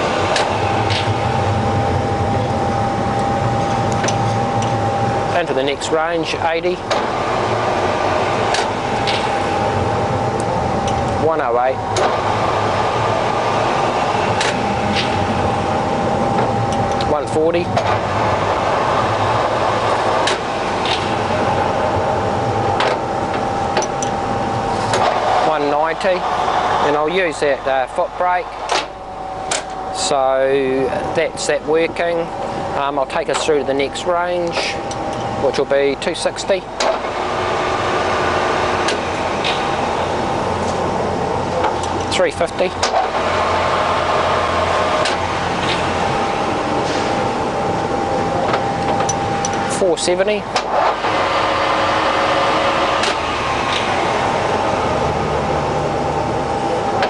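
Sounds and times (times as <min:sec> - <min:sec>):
lathe running with geared hum: 0:00.0 - 0:57.0
steady tone: 0:00.0 - 0:57.0.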